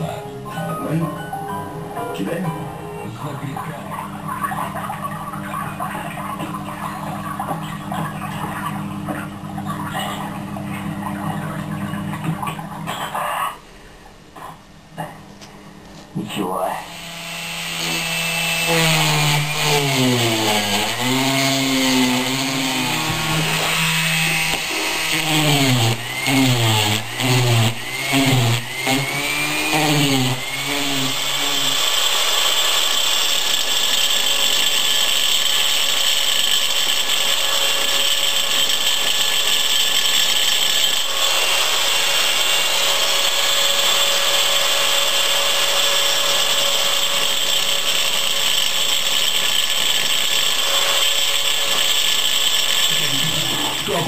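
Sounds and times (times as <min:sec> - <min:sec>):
power tool grinding stone: 0:16.8 - 0:54.0.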